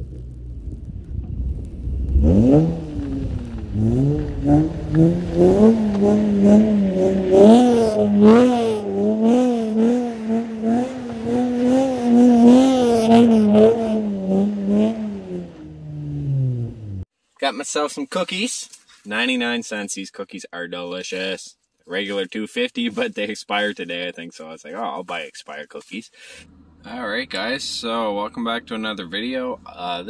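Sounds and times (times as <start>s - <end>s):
car engine revving: 0.0s - 17.1s, 26.4s - 30.0s.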